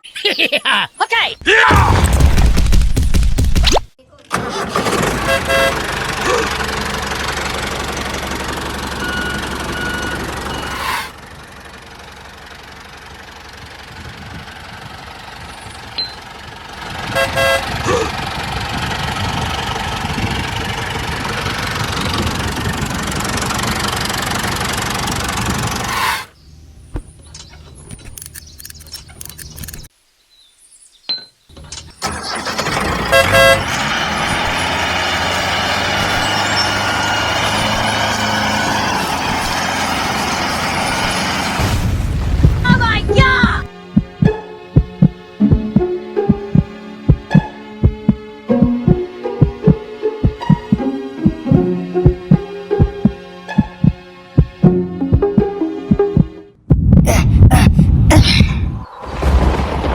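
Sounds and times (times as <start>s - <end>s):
tractor engine running: 4.2s - 29.9s, 31.6s - 59.9s
horn honks: 4.3s - 6.7s, 16.9s - 18.2s, 32.1s - 34.4s.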